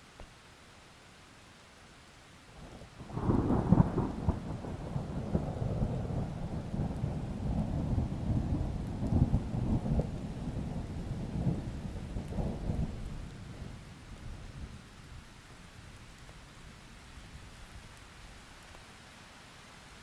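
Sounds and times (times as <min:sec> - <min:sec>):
rain hissing: 0:00.0 - 0:20.0
thunder crackle and rumble: 0:02.6 - 0:15.3.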